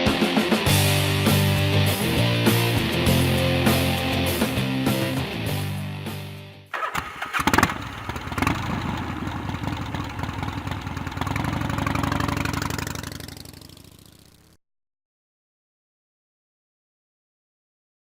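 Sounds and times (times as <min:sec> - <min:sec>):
background music: 0:00.0 - 0:06.7
engine starting and running: 0:06.7 - 0:14.6.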